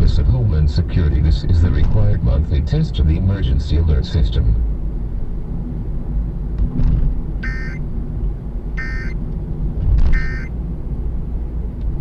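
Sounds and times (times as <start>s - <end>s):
steady low rumble: 0.0s - 12.0s
buzzy digital data bursts: 8.8s - 9.1s, 10.2s - 10.5s.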